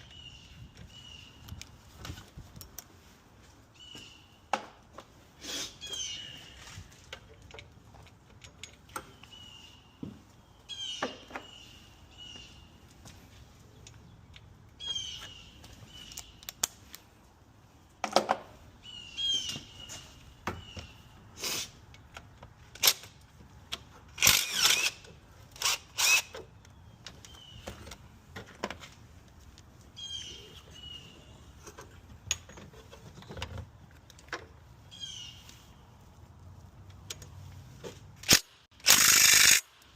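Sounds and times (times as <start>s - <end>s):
metal tools clinking and clanking: 7.1s - 9.3s
bird chirping: 8.9s - 12.9s, 13.6s - 16.6s, 18.8s - 21.1s, 30.0s - 31.7s, 34.9s - 35.7s.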